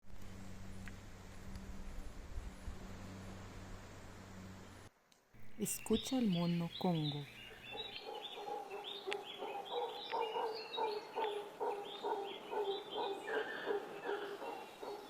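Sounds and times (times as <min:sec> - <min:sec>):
howler monkey calling: 0:05.4 - 0:15.0.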